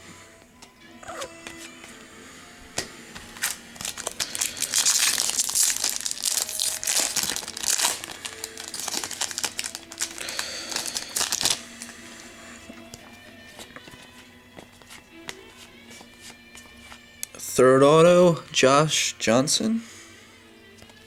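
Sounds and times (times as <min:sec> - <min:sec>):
foil wrapper tearing and crinkling: 0:03.3 - 0:11.9.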